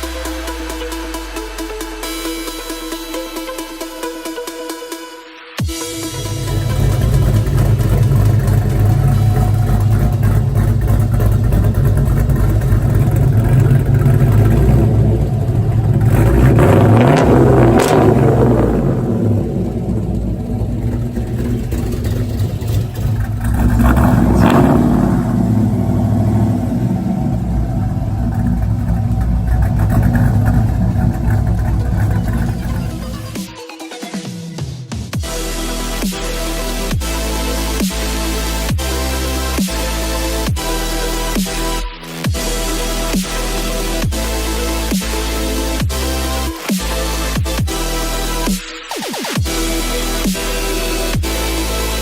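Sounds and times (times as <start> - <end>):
car engine idling and revving: 0.0 - 5.0, 5.6 - 33.5, 35.1 - 52.0.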